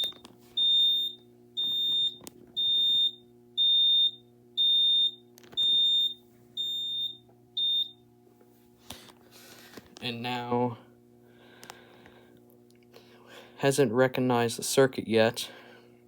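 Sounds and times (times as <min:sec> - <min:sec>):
alarm panel high beeps: 0:00.0 - 0:08.0
faint steady hum: 0:00.0 - 0:16.0.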